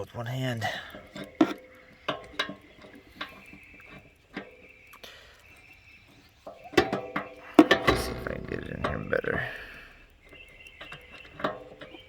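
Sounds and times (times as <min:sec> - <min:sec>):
metal tools clicking and tapping: 0:00.0 - 0:12.0.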